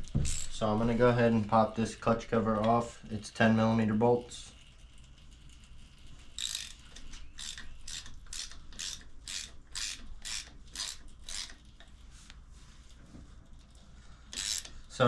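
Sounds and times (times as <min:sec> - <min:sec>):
socket ratchet clicking: 0:06.3 - 0:11.7, 0:14.3 - 0:14.8.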